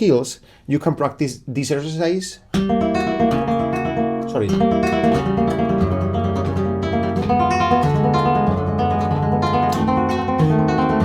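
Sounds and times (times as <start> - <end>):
fingerstyle guitar arpeggios: 2.5 - 11.0.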